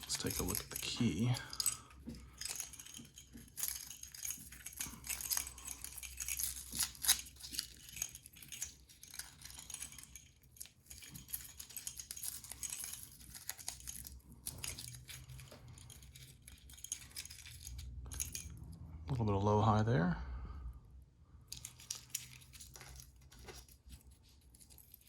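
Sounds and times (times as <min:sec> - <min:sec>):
lock and key metallic clicks: 0:00.0 - 0:18.6.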